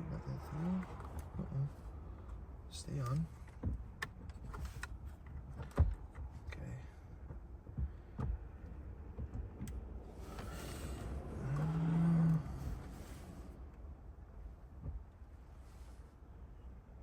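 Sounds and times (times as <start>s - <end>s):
knocks and clicks of parts: 3.4s - 6.6s, 7.2s - 9.9s.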